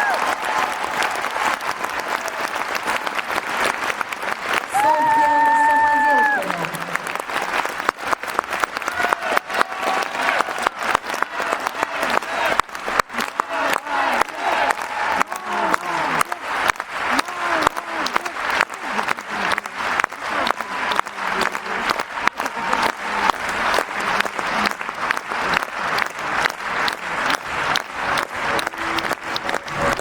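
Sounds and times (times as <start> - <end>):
crowd applauding rhythmically: 0.0 - 30.0
voices calling out: 8.9 - 30.0.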